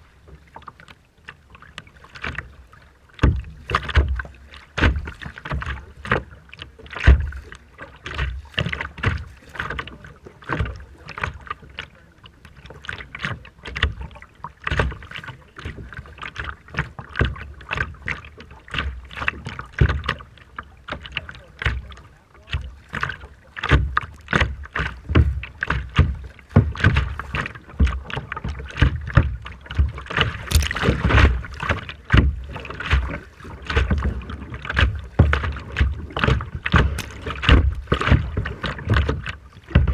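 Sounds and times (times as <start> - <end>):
rough sea water splashing: 0.0 - 39.9.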